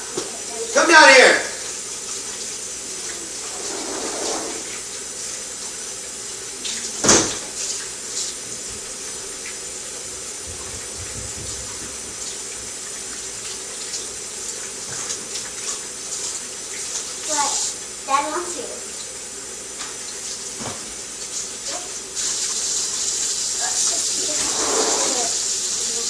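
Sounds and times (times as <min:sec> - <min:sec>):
tap running into sink: 0:06.6 - 0:17.2, 0:19.7 - 0:21.5.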